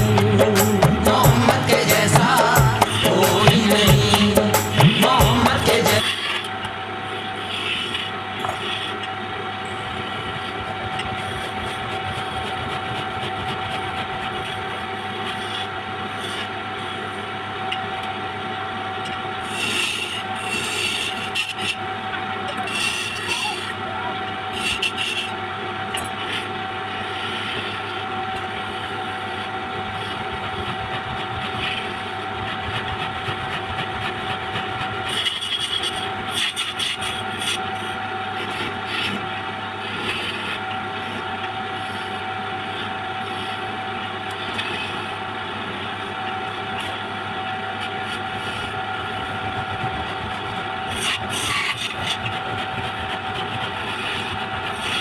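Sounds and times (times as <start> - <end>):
lathe motor hum: 0.0 - 55.0
tool scraping spinning wood: 0.0 - 55.0.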